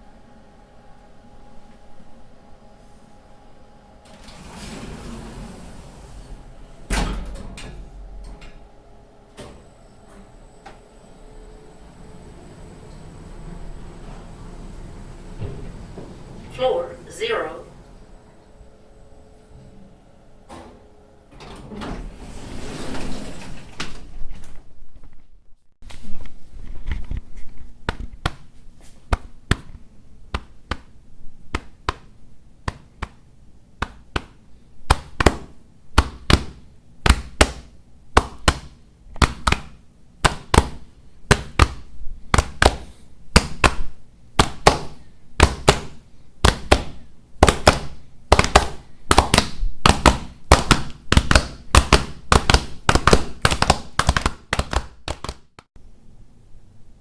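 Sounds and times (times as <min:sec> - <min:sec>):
footsteps on a hard floor: 0:25.9 - 0:29.8.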